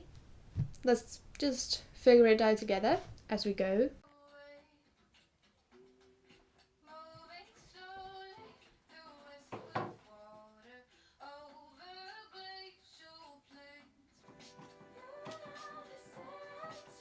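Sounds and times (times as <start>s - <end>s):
woman singing: 4.0s - 4.9s, 6.8s - 17.0s.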